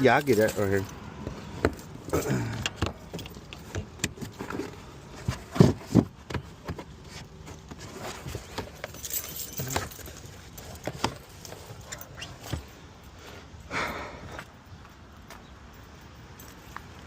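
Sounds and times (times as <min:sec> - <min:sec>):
metal tools clinking: 0:00.0 - 0:01.0, 0:08.0 - 0:12.4.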